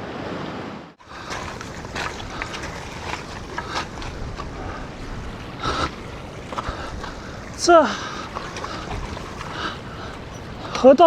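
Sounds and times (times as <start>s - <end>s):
stream water over rocks: 1.0s - 11.0s.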